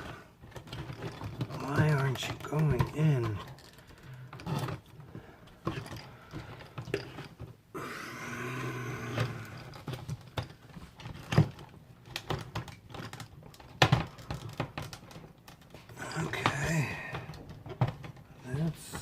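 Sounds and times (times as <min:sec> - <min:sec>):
plastic clicks and knocks: 0:09.2 - 0:19.0.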